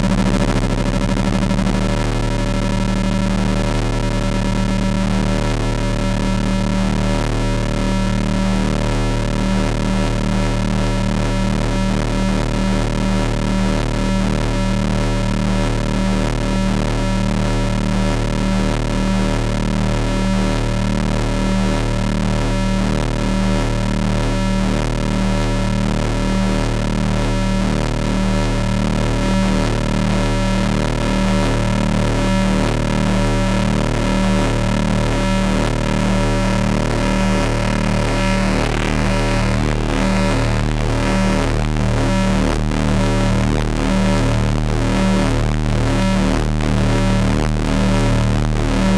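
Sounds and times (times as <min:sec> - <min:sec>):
synthesizer electronic drone: 0:30.4 - 0:48.9
low rhythmic throb: 0:32.8 - 0:48.9.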